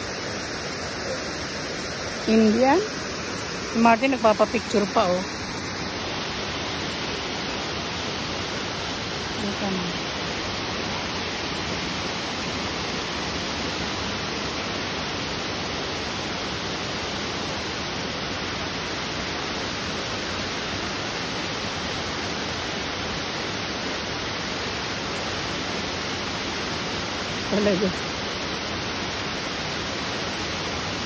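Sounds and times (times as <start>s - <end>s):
waterfall rushing: 0.0s - 31.0s.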